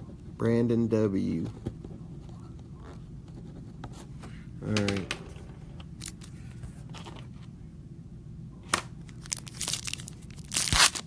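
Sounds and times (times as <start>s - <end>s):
packaging clicking and crackling: 9.1s - 11.0s.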